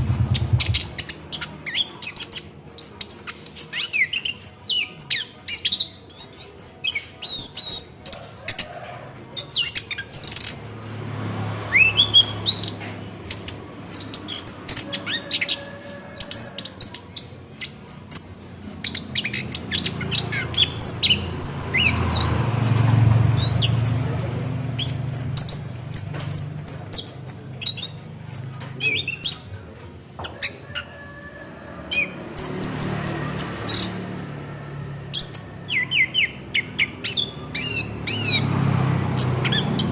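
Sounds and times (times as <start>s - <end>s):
low rumble: 0.0s - 1.0s
thrush singing: 0.0s - 39.9s.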